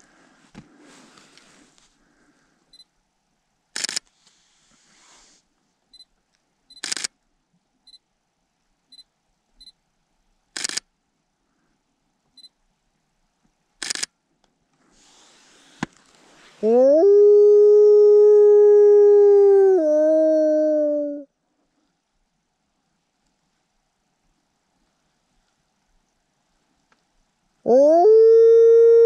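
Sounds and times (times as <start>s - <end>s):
camera shutter clicks: 3.8s - 4.1s, 6.8s - 7.1s, 10.6s - 10.9s, 13.8s - 14.1s.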